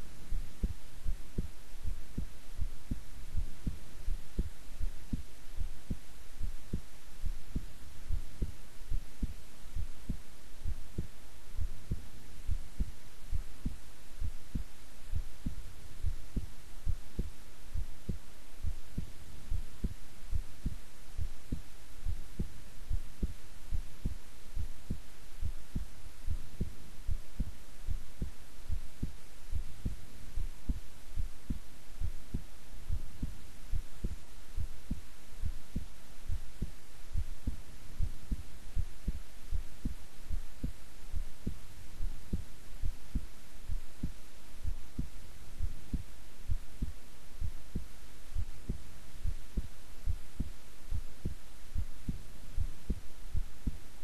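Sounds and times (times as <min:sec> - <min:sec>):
heartbeat thumps: 0:00.0 - 0:53.9.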